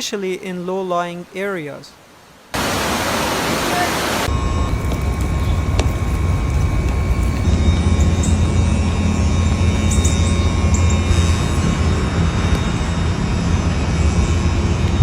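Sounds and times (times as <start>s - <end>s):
faint steady whine: 2.0s - 15.0s
low engine rumble: 4.3s - 15.0s.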